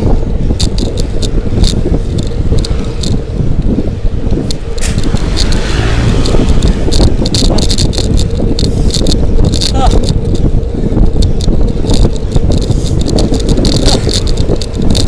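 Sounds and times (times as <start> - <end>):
wind and road noise on microphone: 0.0 - 15.0
short clicks and rattles: 4.4 - 15.0.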